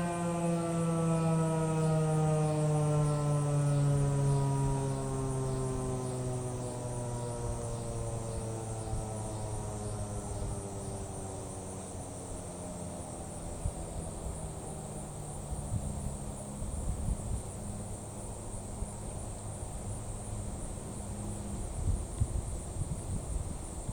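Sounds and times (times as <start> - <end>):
siren winding down: 0.0 - 11.5
crickets buzzing: 0.0 - 23.9.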